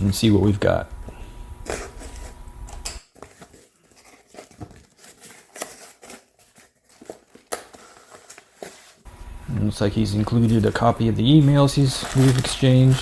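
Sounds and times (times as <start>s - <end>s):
packaging rustling and tearing: 3.1s - 9.0s, 10.4s - 13.0s.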